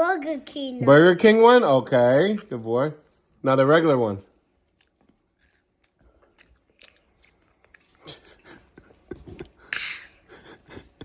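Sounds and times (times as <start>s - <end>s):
child chewing: 2.0s - 11.0s.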